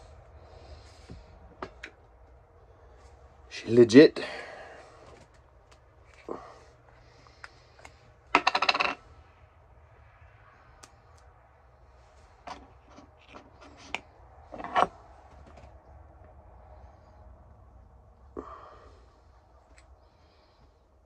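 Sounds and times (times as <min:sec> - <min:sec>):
faint low rumble: 0:04.5 - 0:21.0
objects clicking and knocking: 0:07.8 - 0:09.0.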